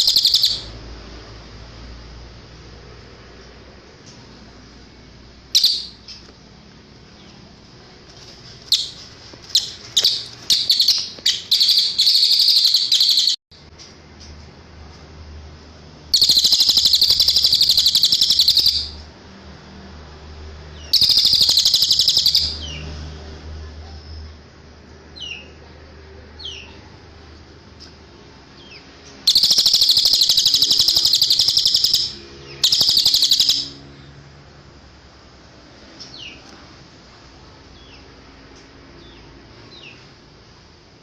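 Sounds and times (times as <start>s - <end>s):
thin down-slurred chirps: 0.0s - 0.7s, 5.6s - 6.3s, 8.6s - 13.4s, 16.1s - 19.0s, 20.9s - 22.8s, 28.7s - 33.9s
bird buzzy trills: 0.0s - 0.8s, 5.5s - 6.3s, 8.2s - 13.4s, 16.1s - 19.1s, 20.8s - 22.8s, 29.2s - 34.0s.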